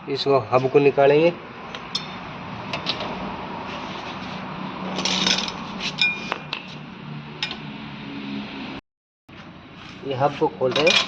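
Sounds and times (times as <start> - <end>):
metal tools clinking and scraping: 4.9 - 6.4, 10.7 - 11.0.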